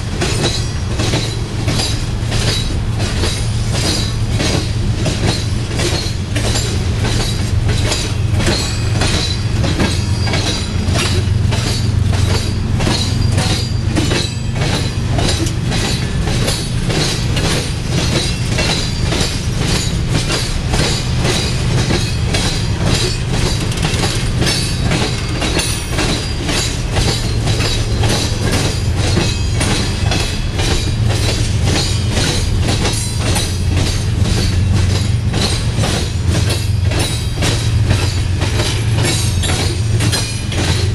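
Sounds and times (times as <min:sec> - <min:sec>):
low train rumble: 0:00.0 - 0:40.9
train wheels clattering over rail joints: 0:00.0 - 0:40.9.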